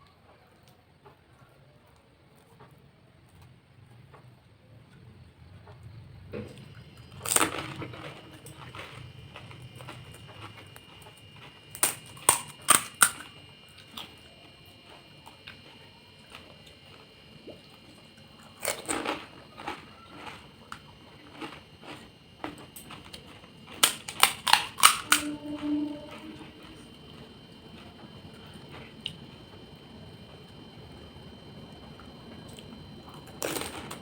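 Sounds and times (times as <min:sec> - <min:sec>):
crisp shells cracking and crunching: 0:06.5 - 0:14.2, 0:18.4 - 0:25.8, 0:33.2 - 0:34.0.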